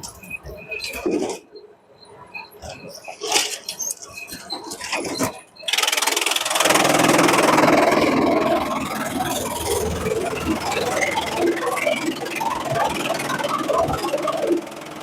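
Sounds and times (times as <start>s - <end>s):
shredder machine grinding: 5.7s - 15.0s.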